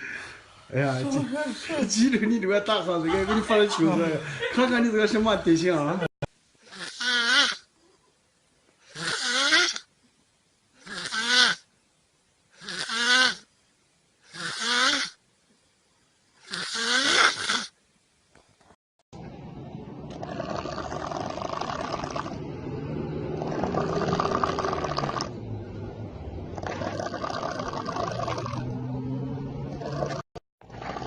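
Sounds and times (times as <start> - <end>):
person snoring heavily: 6.7 - 7.6, 8.9 - 9.9, 10.8 - 11.6, 12.6 - 13.5, 14.3 - 15.2, 16.4 - 17.7, 20.1 - 22.4, 23.3 - 25.4, 26.6 - 28.7.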